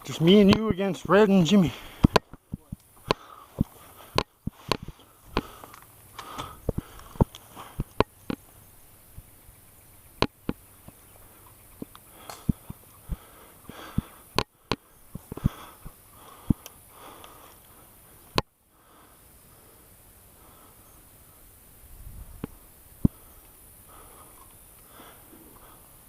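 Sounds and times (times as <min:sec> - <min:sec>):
close breathing and sniffing: 0:01.3 - 0:02.2, 0:02.9 - 0:08.6, 0:11.2 - 0:21.7, 0:22.5 - 0:26.0
sharp clicks and snaps: 0:02.0 - 0:08.5.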